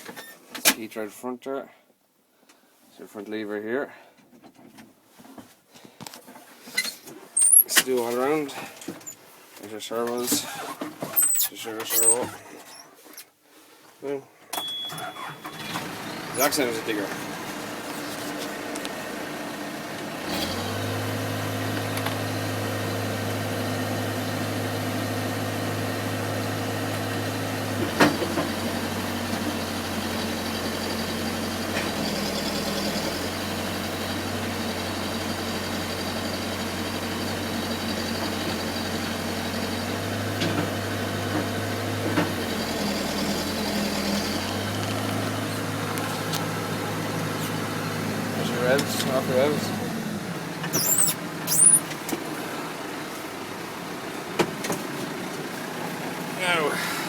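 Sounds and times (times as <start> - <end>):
diesel engine running: 15.0 - 57.0.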